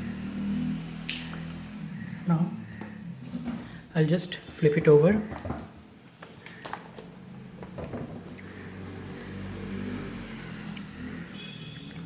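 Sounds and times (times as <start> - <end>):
low motor hum: 0.0 - 3.7.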